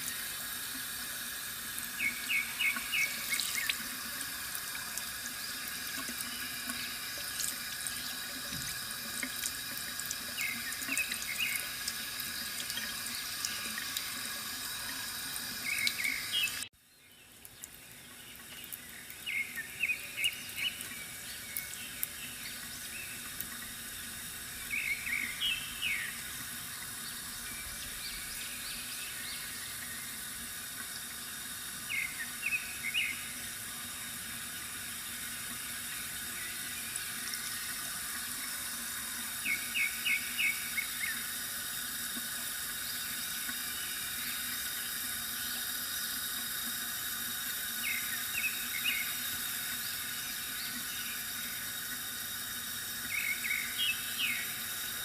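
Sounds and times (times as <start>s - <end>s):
water trickling from fountain: 0.0s - 55.0s
bird chirps: 2.0s - 3.8s.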